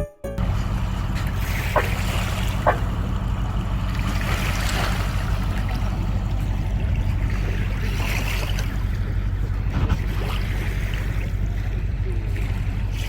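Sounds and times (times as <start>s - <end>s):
sea water washing on shore: 0.4s - 13.0s
steady low rumble: 0.4s - 13.0s.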